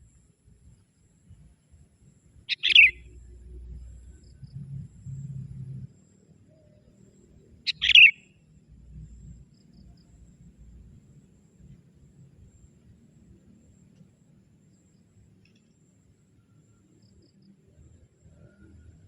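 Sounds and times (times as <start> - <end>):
bulbul calling: 2.5 - 3.1, 7.7 - 8.3.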